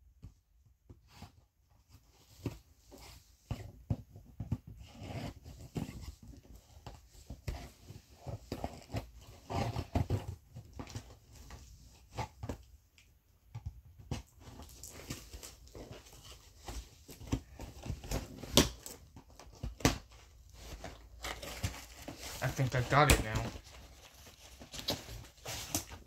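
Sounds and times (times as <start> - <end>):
cardboard scraping and rustling: 1.0 - 12.7, 14.0 - 26.0
scissors cutting cardboard: 4.6 - 12.5, 13.9 - 22.4.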